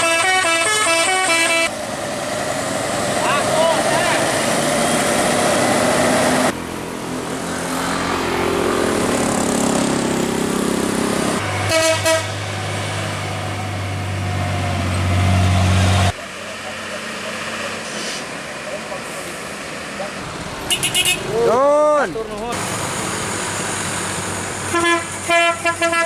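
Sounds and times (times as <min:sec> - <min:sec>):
truck horn toots: 0:00.0 - 0:01.7, 0:11.6 - 0:12.4, 0:20.7 - 0:21.3, 0:24.7 - 0:26.0
dump truck engine under load: 0:01.7 - 0:21.4, 0:22.1 - 0:25.3.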